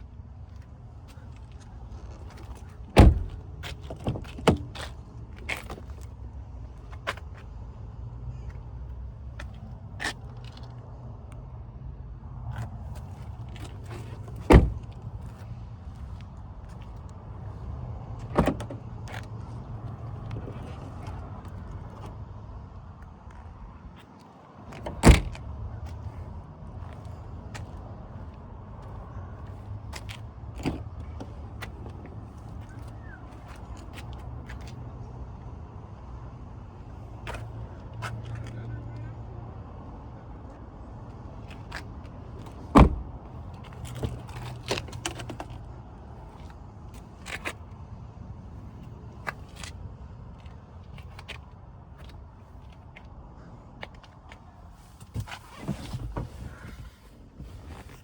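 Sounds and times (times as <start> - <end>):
car door shutting: 2.0 - 4.8, 13.6 - 15.0, 18.2 - 19.2, 24.7 - 25.4, 42.4 - 43.1, 55.0 - 56.9.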